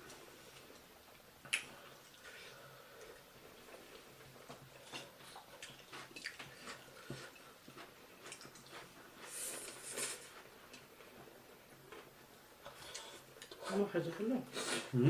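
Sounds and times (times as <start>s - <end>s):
chewing and mouth noises: 3.0s - 11.2s.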